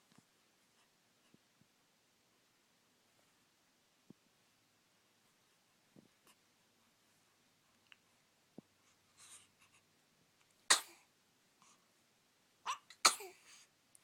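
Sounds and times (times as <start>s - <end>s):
baby sneezing: 10.7s - 11.0s, 12.7s - 13.5s.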